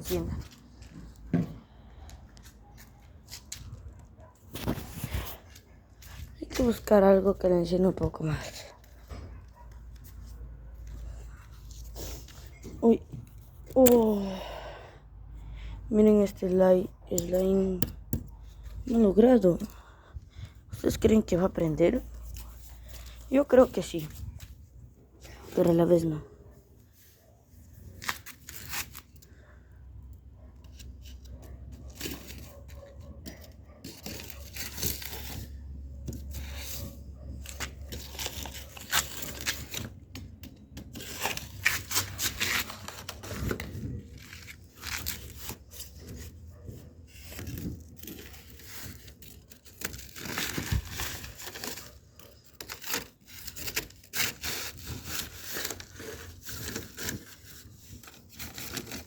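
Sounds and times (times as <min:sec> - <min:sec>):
paper crumpling and rustling: 0:03.0 - 0:06.9, 0:27.8 - 0:29.4, 0:30.7 - 0:59.0.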